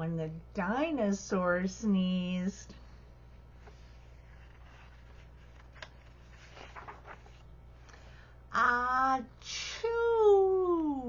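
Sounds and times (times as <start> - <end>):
faint rustles: 3.5 - 7.5.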